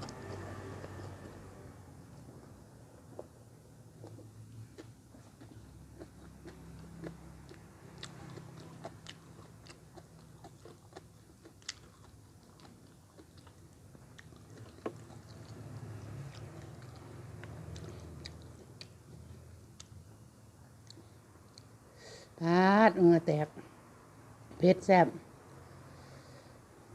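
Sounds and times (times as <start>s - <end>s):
person chewing crunchy food: 3.0s - 20.0s.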